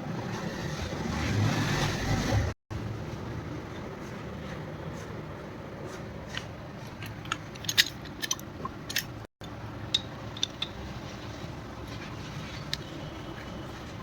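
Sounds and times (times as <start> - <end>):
metal parts and tools clinking: 6.8 - 11.3.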